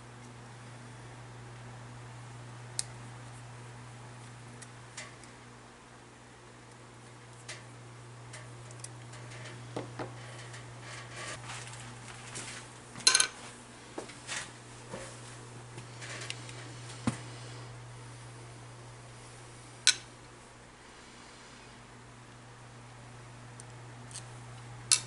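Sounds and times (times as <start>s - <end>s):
steady low hum: 0.0s - 25.0s
metal tools clinking on workbench: 13.0s - 13.4s.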